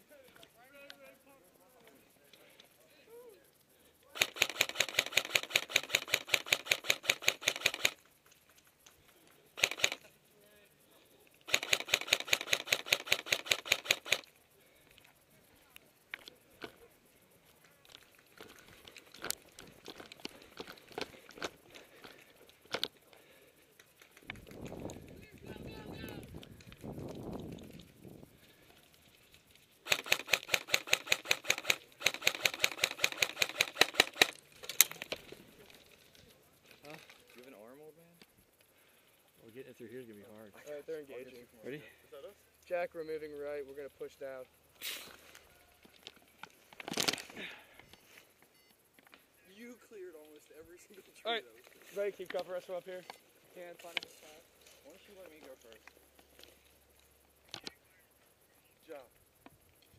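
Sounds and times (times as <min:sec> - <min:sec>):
rapid mechanical clicking: 0:04.0 - 0:10.2, 0:11.4 - 0:15.2, 0:26.3 - 0:36.0
airsoft gun full auto bursts: 0:04.2 - 0:08.0, 0:09.6 - 0:10.1, 0:11.5 - 0:14.3, 0:29.8 - 0:34.4.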